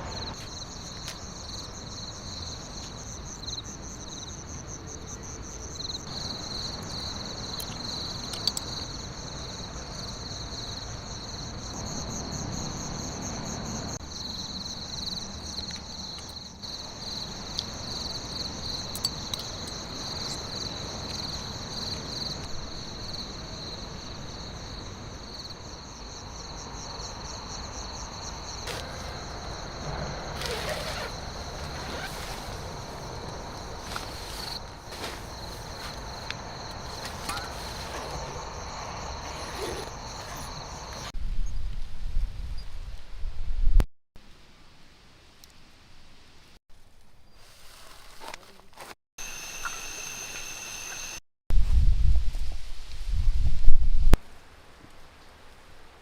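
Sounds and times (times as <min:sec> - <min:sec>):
insects trilling: 0:00.2 - 0:41.1, 0:49.2 - 0:51.2.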